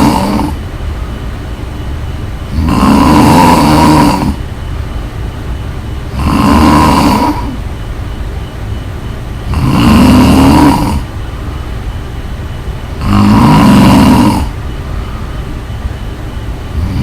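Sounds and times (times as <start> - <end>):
loud snoring: 0.0 - 0.6, 2.5 - 4.4, 6.1 - 7.6, 9.4 - 11.1, 13.0 - 14.6, 16.7 - 17.0.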